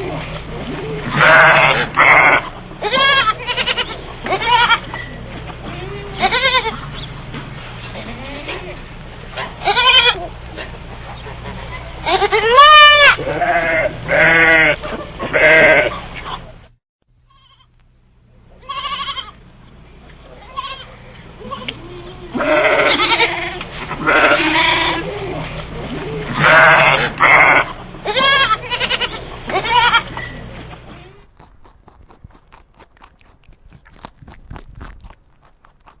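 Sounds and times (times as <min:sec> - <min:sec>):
sheep or goats bleating: 0:01.0 - 0:05.0, 0:05.6 - 0:06.9, 0:08.0 - 0:08.8, 0:09.6 - 0:10.3, 0:11.7 - 0:16.4, 0:18.6 - 0:19.4, 0:20.4 - 0:25.1, 0:26.2 - 0:30.2.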